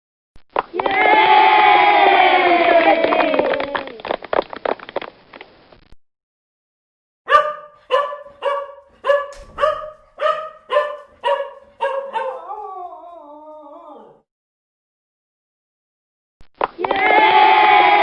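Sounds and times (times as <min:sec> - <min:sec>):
dog barking: 0:07.3 - 0:12.7
dog howling: 0:07.3 - 0:14.3.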